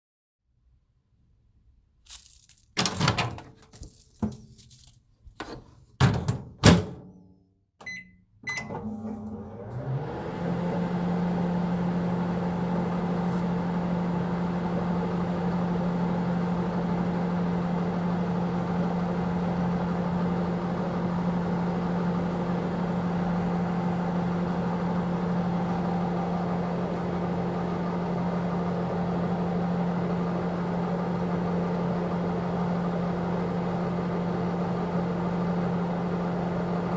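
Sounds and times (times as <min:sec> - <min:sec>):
microwave keypad beeps: 0:07.8 - 0:08.8
microwave oven humming: 0:07.8 - 0:36.9.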